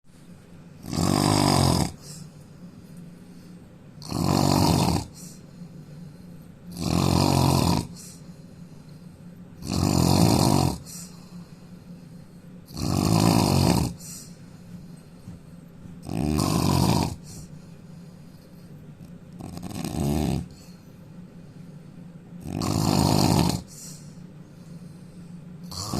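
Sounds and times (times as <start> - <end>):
man snoring loudly: 0.8 - 2.2, 4.0 - 5.4, 6.7 - 8.2, 9.6 - 11.1, 12.7 - 14.1, 16.0 - 17.4, 19.4 - 20.6, 22.4 - 23.7, 25.7 - 25.9.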